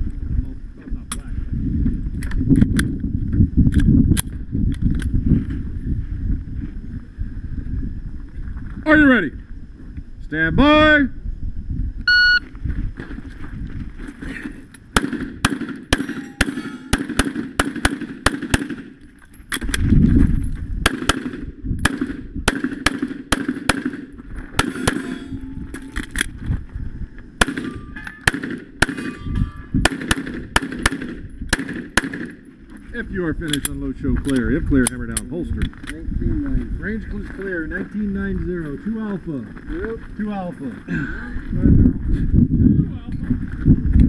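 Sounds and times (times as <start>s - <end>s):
shot timer beep: 12.1s - 12.4s
pistol shots: 15.0s - 19.0s, 20.8s - 25.2s, 27.4s - 32.4s.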